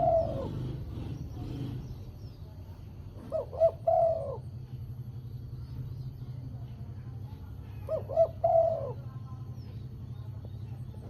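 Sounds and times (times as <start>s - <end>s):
dove cooing: 0.0s - 1.9s, 3.2s - 4.9s, 7.6s - 9.3s.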